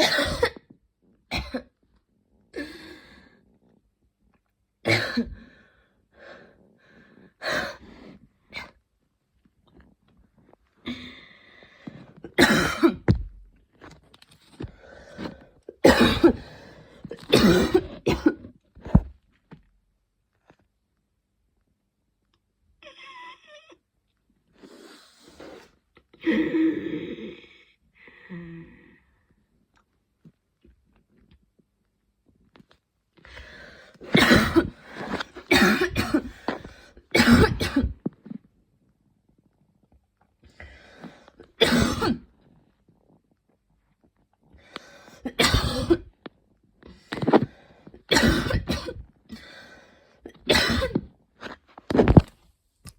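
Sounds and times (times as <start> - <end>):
woman coughing: 0.0 - 0.6, 1.3 - 1.7, 4.9 - 5.4, 12.4 - 13.1, 15.8 - 16.4, 17.2 - 18.5, 34.1 - 34.8, 35.4 - 36.3, 37.2 - 38.0, 41.6 - 42.2, 45.3 - 46.1, 48.1 - 49.0, 50.3 - 51.0.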